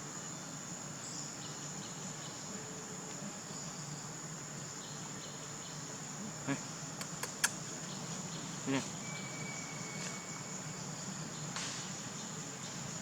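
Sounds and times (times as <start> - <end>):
insects chirring: 0.0 - 13.0
sharp click: 7.0 - 7.6.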